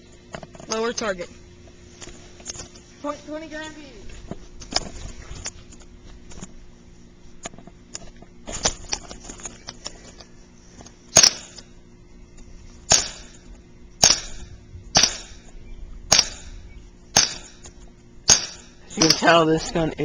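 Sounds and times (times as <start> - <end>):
airsoft pistol shots: 11.2 - 11.6, 12.9 - 13.4, 14.0 - 15.5, 16.1 - 17.7, 18.3 - 19.3.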